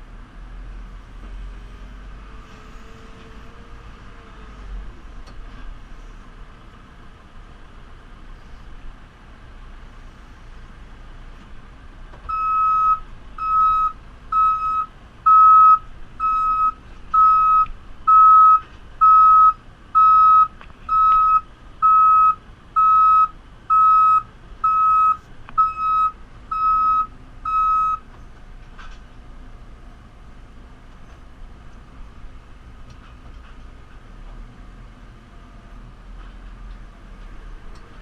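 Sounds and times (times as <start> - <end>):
diesel engine humming: 0.0 - 38.0
reversing alarm beeping: 12.3 - 28.0.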